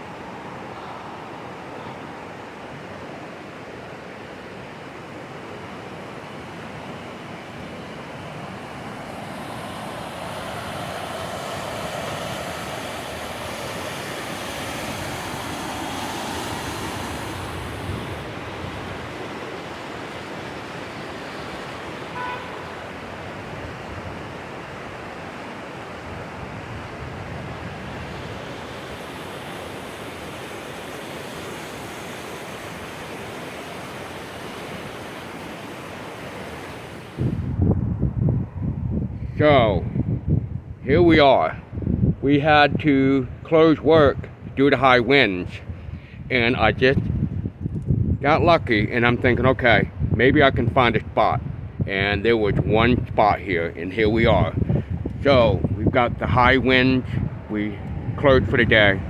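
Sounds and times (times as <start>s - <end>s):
mountain stream water running: 0.0s - 37.4s
strong wind rushing: 8.3s - 20.0s, 26.0s - 31.8s, 36.6s - 59.0s.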